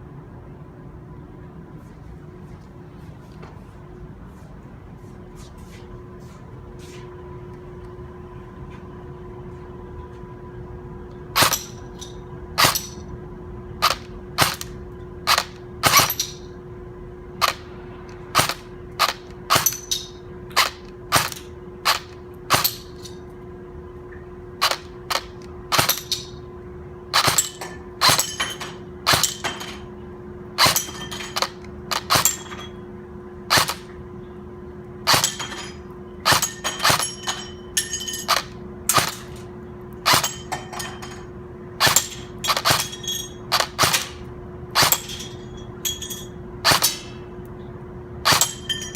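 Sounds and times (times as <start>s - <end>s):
steady hum: 0.0s - 48.9s
airsoft gun shots: 33.5s - 33.8s, 35.1s - 35.4s, 43.5s - 44.1s, 46.7s - 47.0s, 48.3s - 48.5s.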